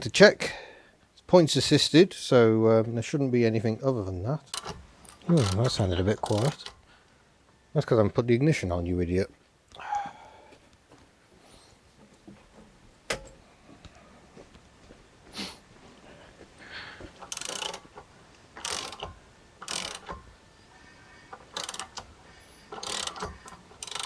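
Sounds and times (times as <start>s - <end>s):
starter motor cranking engine: 4.5s - 6.8s, 17.2s - 20.3s, 21.3s - 24.0s
sharp click: 13.1s - 13.4s.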